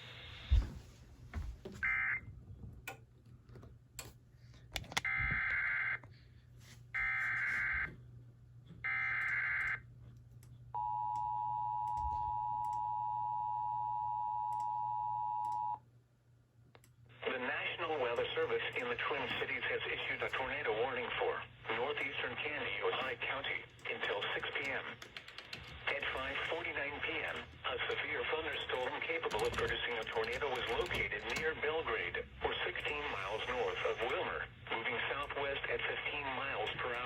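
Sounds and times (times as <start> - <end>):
scattered clicks: 23.0 - 31.7, 32.5 - 34.2.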